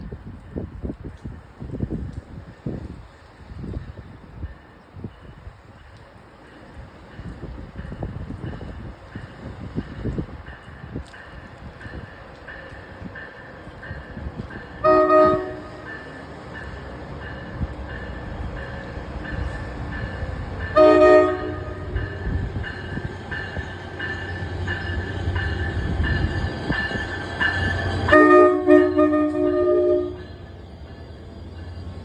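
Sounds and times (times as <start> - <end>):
train rumble: 0.0 - 32.0
train horn blasts: 14.8 - 16.0, 20.7 - 22.1, 28.0 - 30.4.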